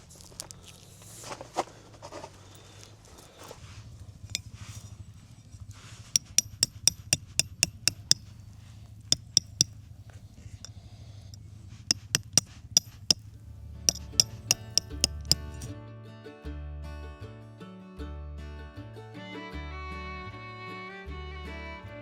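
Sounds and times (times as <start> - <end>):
hammer striking metal stake: 4.3 - 5.0, 6.0 - 8.4, 9.1 - 9.8, 11.8 - 15.7.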